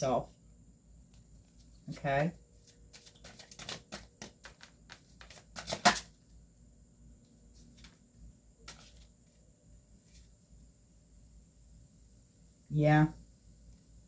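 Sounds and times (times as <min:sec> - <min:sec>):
cards shuffling: 0:02.6 - 0:06.1, 0:08.7 - 0:09.1.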